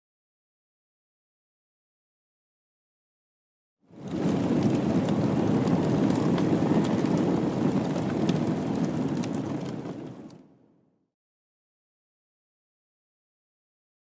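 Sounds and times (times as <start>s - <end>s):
explosion with rumbling roar: 4.0s - 10.3s.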